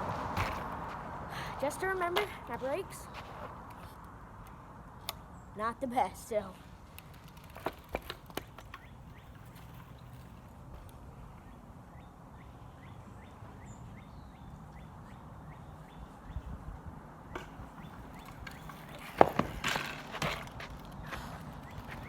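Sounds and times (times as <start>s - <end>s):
bicycle ticking: 6.8s - 11.0s, 17.3s - 22.0s.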